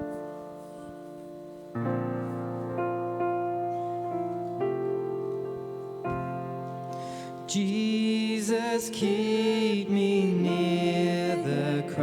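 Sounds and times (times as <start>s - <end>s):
piano playing slow hymn chords: 0.0s - 12.0s
people singing: 7.5s - 12.0s.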